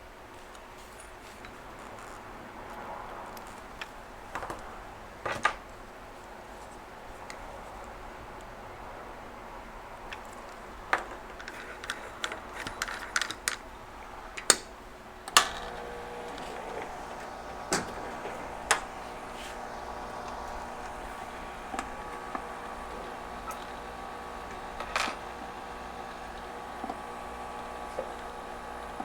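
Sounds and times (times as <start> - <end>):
steady hum: 15.3 - 29.0
steady tones: 15.4 - 29.0.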